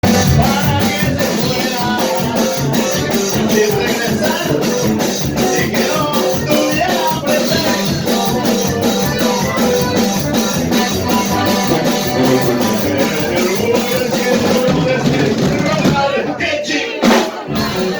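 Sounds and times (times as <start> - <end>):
brass band music: 0.0 - 17.9
steady drum beat: 0.0 - 17.9
brass instrument lines: 7.4 - 15.0.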